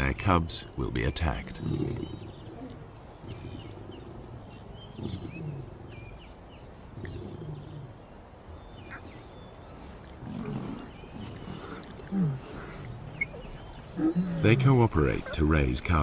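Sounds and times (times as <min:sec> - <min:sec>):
faint bird chirps: 0:00.9 - 0:15.4
lions growling: 0:01.3 - 0:06.2, 0:06.8 - 0:08.0, 0:10.1 - 0:16.0.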